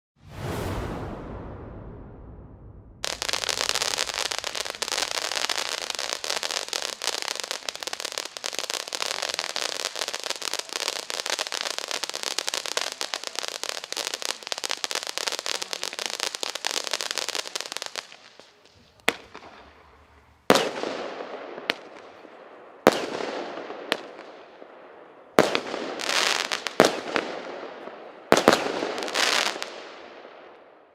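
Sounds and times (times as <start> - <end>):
firework fountain crackling hiss: 3.0 - 21.0
firework shots and bursts: 3.0 - 30.6.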